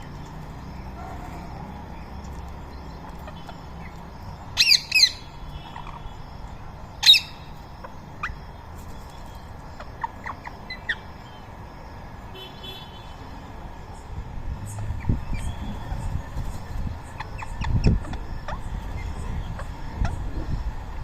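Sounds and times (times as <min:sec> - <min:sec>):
parrots squawking: 0:04.6 - 0:06.1, 0:07.0 - 0:07.5.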